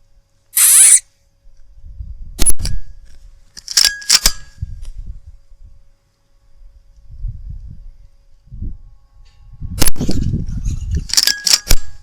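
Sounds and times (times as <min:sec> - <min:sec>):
metallic clicks of rifle action: 0:03.5 - 0:04.5, 0:11.0 - 0:12.0.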